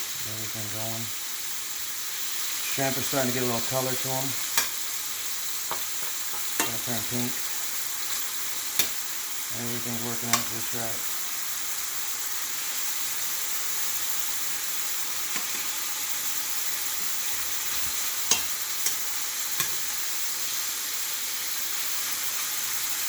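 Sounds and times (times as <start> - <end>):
food sizzling in oil: 0.0 - 23.0
utensil clicking against pan: 5.7 - 6.9, 8.8 - 9.0, 10.3 - 10.6, 17.7 - 19.8.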